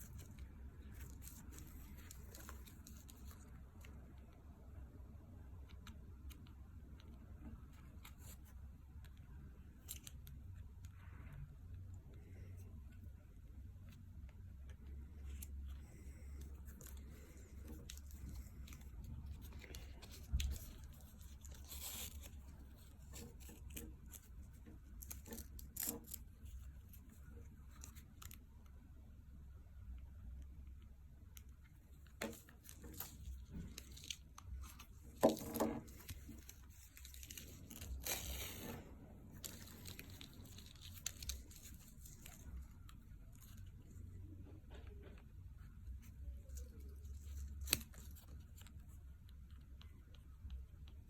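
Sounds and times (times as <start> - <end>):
hook-and-loop fastener ripping: 15.3 - 27.0, 32.1 - 43.7
handling clicks and scrapes: 31.6 - 48.9.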